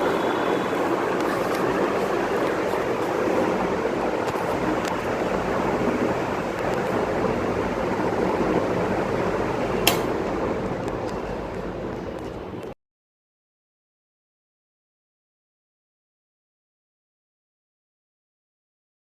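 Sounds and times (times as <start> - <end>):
electric fan humming: 0.0 - 12.8
sharp click: 9.8 - 10.3.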